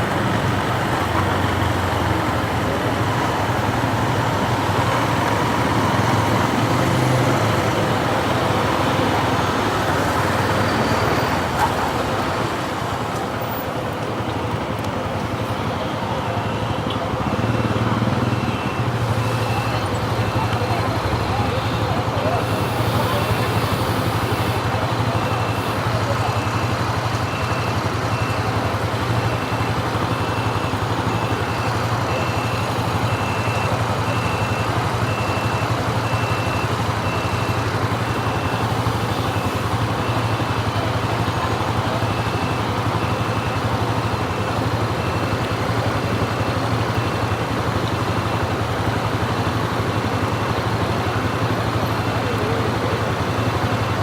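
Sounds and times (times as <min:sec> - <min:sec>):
motorcycle engine running: 0:00.0 - 0:54.0
road and wind noise: 0:00.0 - 0:54.0
faint high beep: 0:15.6 - 0:47.4.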